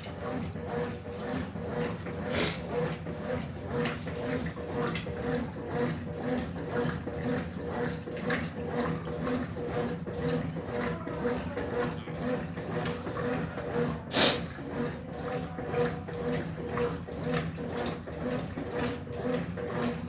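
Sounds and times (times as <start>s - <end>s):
washing machine agitator swishing: 0.0s - 20.0s
washing machine motor hum: 0.0s - 20.0s.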